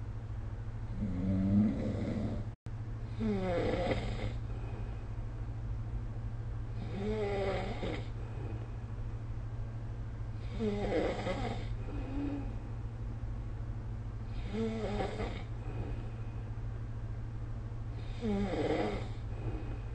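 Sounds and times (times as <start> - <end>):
steady low hum: 0.0 - 19.9
person snoring: 0.9 - 2.5, 3.1 - 4.9, 6.8 - 8.6, 10.4 - 12.6, 14.3 - 16.1, 18.0 - 19.9.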